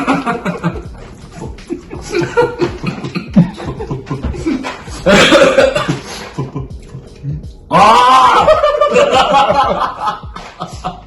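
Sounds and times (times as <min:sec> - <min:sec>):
men chuckling and murmuring: 0:00.0 - 0:11.0
loud cough: 0:04.5 - 0:06.1.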